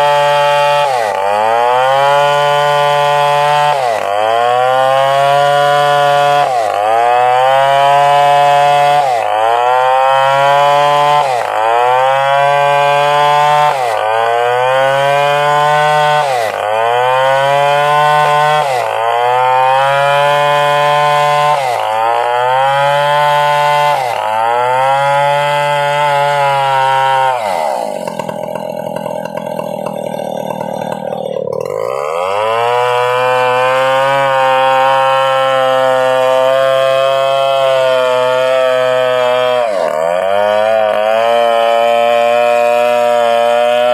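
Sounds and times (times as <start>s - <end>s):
chainsaw cutting wood: 0.0s - 43.9s.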